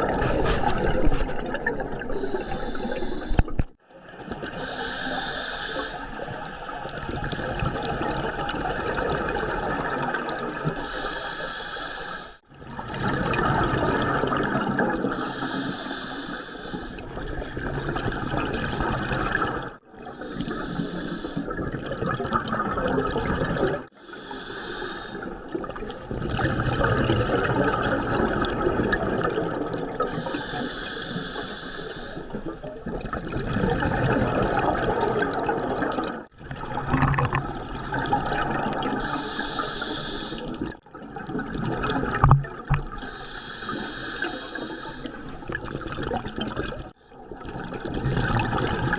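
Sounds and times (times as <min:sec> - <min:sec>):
regulator inhalation hiss: 0:02.2 - 0:03.6, 0:04.6 - 0:06.3, 0:10.8 - 0:12.4, 0:15.1 - 0:17.0, 0:20.2 - 0:21.5, 0:24.0 - 0:26.1, 0:30.1 - 0:32.4, 0:38.9 - 0:40.5, 0:43.0 - 0:45.5
exhaust bubbles rushing: 0:32.9 - 0:38.9, 0:45.5 - 0:48.9.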